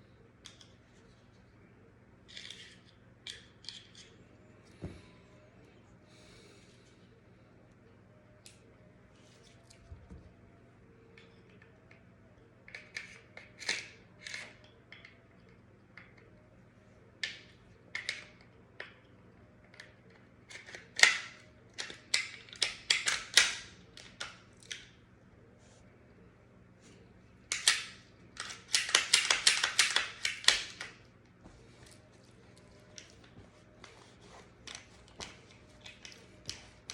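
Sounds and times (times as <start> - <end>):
pistol parts clicking and tapping: 20.5 - 24.2, 27.5 - 31.0.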